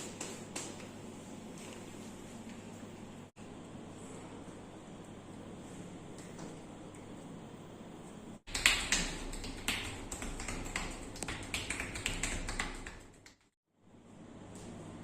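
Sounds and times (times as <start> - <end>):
hands tapping on body: 8.5 - 13.6.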